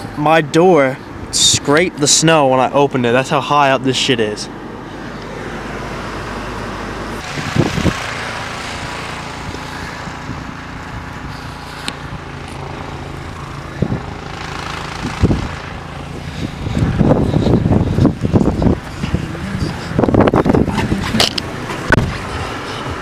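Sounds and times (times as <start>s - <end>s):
engine running with rushing hiss: 3.0s - 23.0s
dull low thumps: 14.9s - 23.0s.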